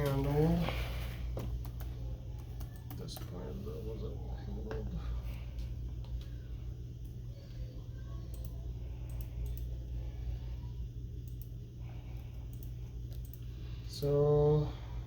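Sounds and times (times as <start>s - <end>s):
steady low hum: 0.0s - 15.0s
keyboard and mouse clicks: 1.4s - 3.4s.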